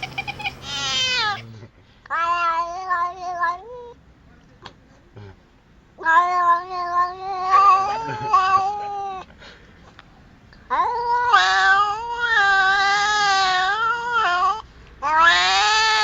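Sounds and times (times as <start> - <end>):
cat yowling: 0.0 - 1.5, 2.1 - 3.9, 6.0 - 9.2, 10.7 - 16.0.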